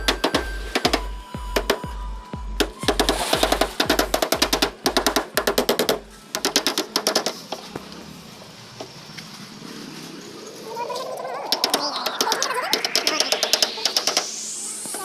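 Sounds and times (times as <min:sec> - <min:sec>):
background music with drum beat: 0:00.0 - 0:07.2, 0:11.5 - 0:15.0
fast clicking percussion: 0:02.6 - 0:07.4, 0:11.4 - 0:15.0.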